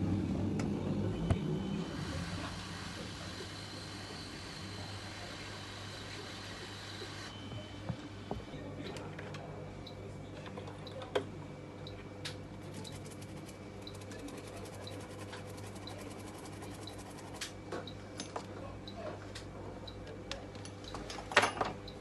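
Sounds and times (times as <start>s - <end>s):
steady electrical hum: 0.0s - 20.0s.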